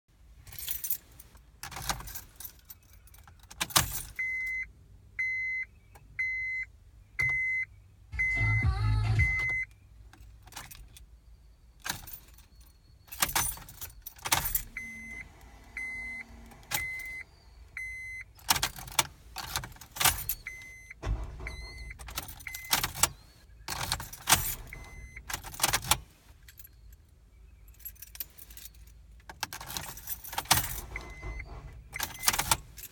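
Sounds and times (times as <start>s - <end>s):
keys jangling in ignition: 0.4s - 4.6s, 9.2s - 11.2s, 11.8s - 32.9s
car warning chime beeping: 4.1s - 9.8s, 12.9s - 25.8s, 29.9s - 32.9s.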